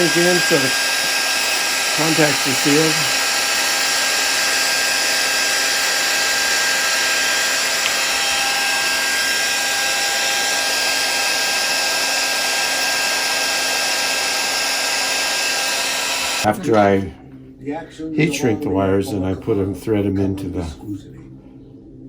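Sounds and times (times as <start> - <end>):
heat gun blowing: 0.0 - 16.5.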